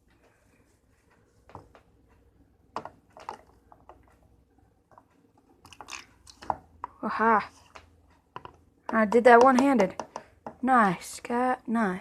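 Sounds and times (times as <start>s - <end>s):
wet batter squishing: 2.8s - 10.6s.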